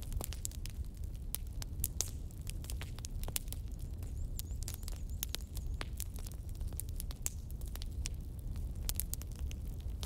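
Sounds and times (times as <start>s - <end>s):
low rumble of fire: 0.0s - 10.0s
wood fire popping and snapping: 0.0s - 10.0s.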